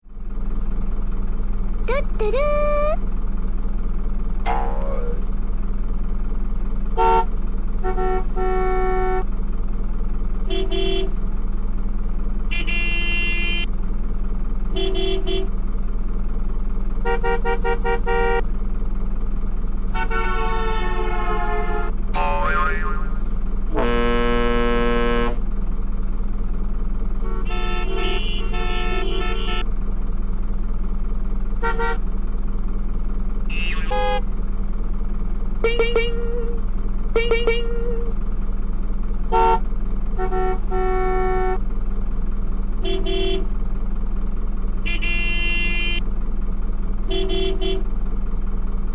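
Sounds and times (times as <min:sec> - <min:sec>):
electronic toy car horn honk: 0:07.0 - 0:09.2, 0:10.4 - 0:11.2, 0:12.5 - 0:13.7, 0:14.7 - 0:15.5, 0:17.0 - 0:18.4, 0:19.9 - 0:21.9, 0:23.7 - 0:25.4, 0:27.2 - 0:29.7, 0:31.6 - 0:32.0, 0:33.5 - 0:34.2, 0:35.6 - 0:36.6, 0:37.2 - 0:38.2, 0:39.3 - 0:41.6, 0:42.8 - 0:43.5, 0:44.8 - 0:46.0, 0:47.1 - 0:47.8
steady low hum: 0:21.2 - 0:30.1, 0:30.8 - 0:41.6
toy car horn tooting: 0:27.3 - 0:29.6, 0:33.5 - 0:34.2, 0:35.6 - 0:36.6, 0:37.2 - 0:38.1, 0:39.3 - 0:39.6, 0:42.8 - 0:43.5, 0:44.8 - 0:46.0, 0:47.1 - 0:47.8.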